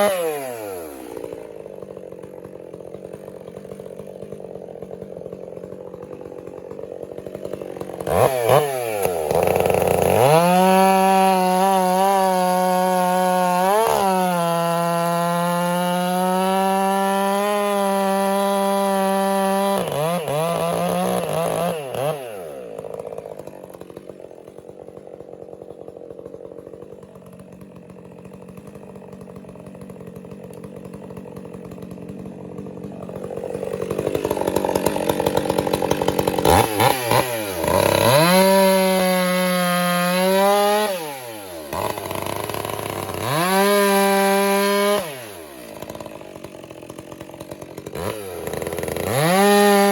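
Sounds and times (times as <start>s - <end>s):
chainsaw cutting wood: 0.0s - 49.9s.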